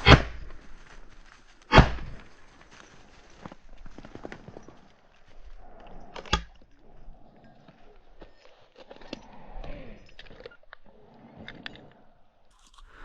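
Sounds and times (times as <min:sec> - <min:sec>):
footsteps crunching through dry grass: 0:00.0 - 0:05.8.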